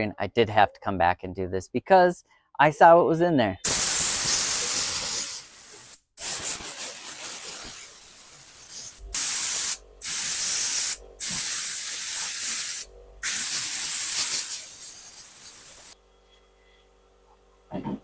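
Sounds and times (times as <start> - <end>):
compressed air hissing blasts: 3.6 - 16.0.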